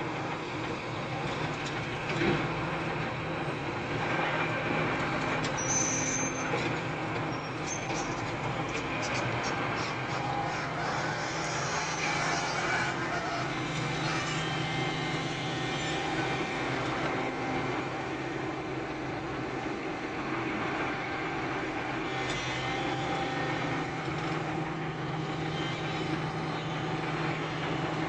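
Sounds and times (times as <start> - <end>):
excavator diesel engine running: 0.0 - 28.0.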